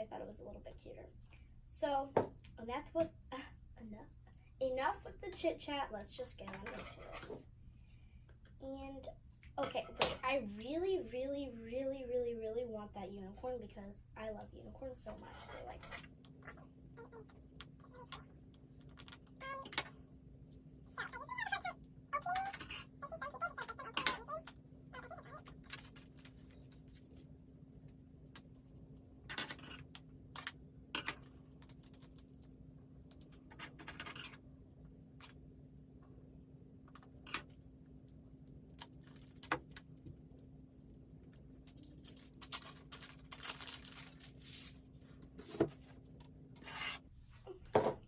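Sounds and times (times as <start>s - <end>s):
plastic packaging crinkling: 25.0s - 27.3s, 41.2s - 44.9s
packaging tearing: 41.7s - 44.8s.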